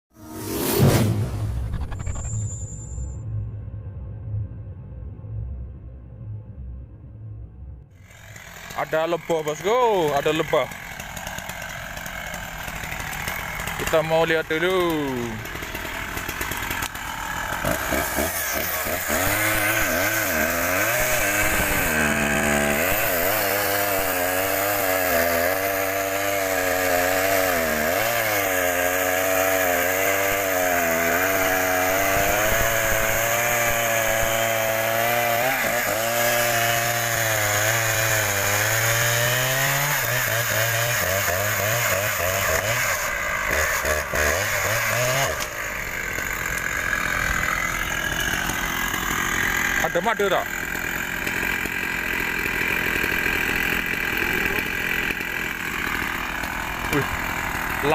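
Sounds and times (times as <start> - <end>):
chainsaw cutting wood: 8.0 - 57.9.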